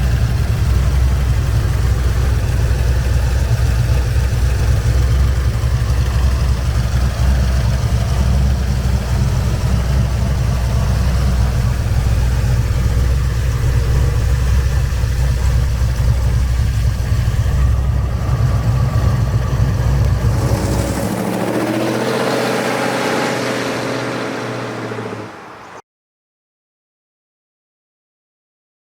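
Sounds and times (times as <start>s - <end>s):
engine idling with deep rumble: 0.0s - 22.3s
fainter higher sound: 16.7s - 25.6s.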